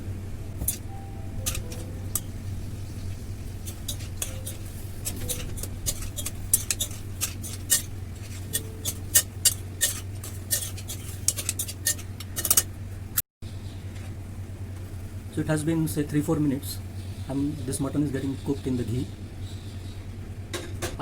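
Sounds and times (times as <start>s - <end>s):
steady low hum: 0.0s - 20.6s
meat frying: 0.6s - 12.2s
metal spoon clinking on pan: 3.7s - 7.9s, 8.5s - 12.7s.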